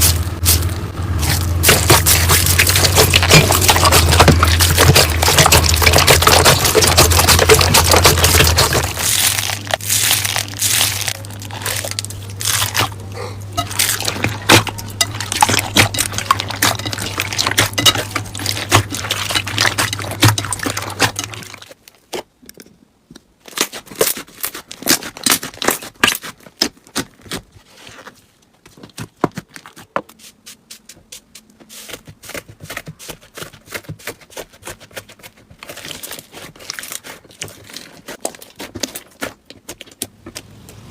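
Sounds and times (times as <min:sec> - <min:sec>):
slime crackling and popping: 0:00.0 - 0:13.0
low steady hum: 0:00.0 - 0:21.7.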